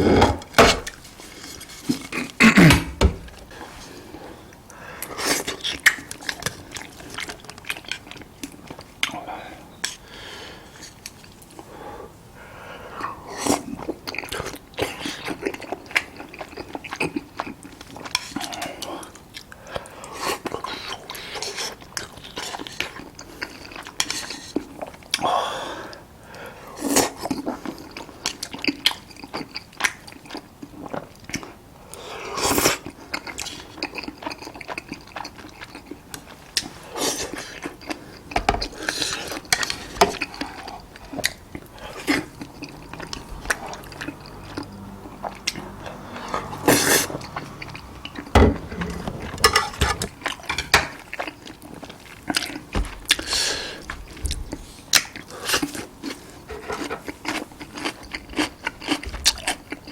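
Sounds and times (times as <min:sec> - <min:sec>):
crunchy chewing: 0:26.8 - 0:49.0, 0:50.0 - 0:59.9.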